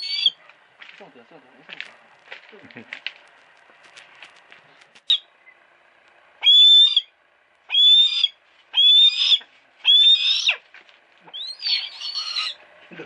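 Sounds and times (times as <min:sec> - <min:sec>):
hawk crying: 0:00.0 - 0:00.4, 0:06.4 - 0:10.6, 0:11.2 - 0:12.6.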